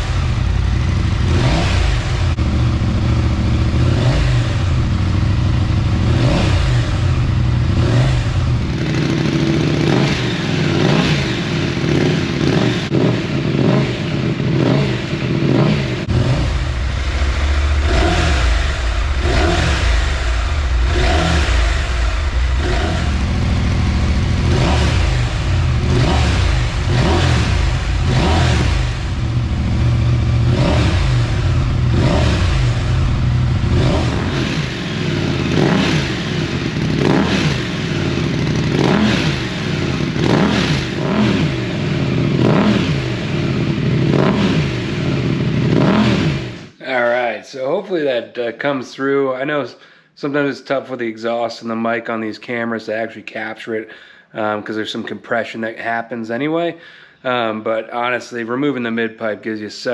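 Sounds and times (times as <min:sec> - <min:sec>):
motorcycle engine revving: 0:00.0 - 0:47.1.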